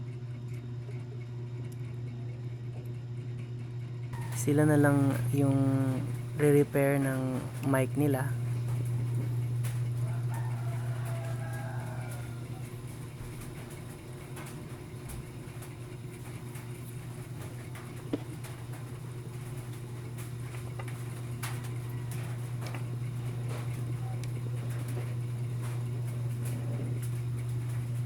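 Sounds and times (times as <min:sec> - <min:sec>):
steady low hum: 0:00.0 - 0:28.0
small clicks and taps: 0:17.7 - 0:18.6, 0:20.2 - 0:22.9.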